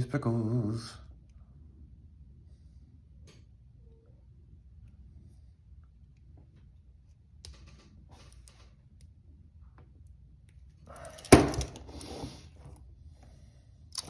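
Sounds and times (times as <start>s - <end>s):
handcuffs clicking: 10.9s - 12.1s
handcuffs rattling: 10.9s - 12.2s
handcuffs thunk: 11.0s - 12.2s.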